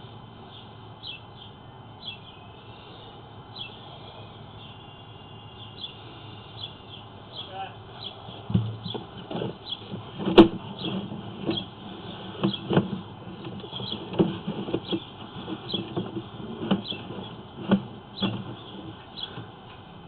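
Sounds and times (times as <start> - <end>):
camera knocking and scraping in pipe: 8.5 - 19.5.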